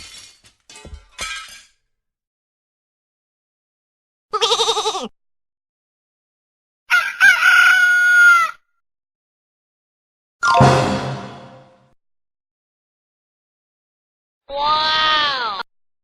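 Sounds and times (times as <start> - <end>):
sheep bleating: 4.3 - 5.1
rooster crowing: 6.9 - 8.6
sudden pitched sound: 10.4 - 11.8.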